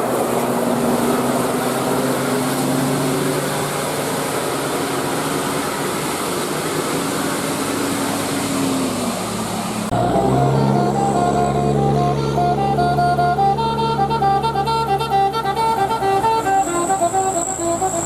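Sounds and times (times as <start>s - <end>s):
bus passing: 0.0s - 18.0s
music horn playing a melody: 10.0s - 18.0s.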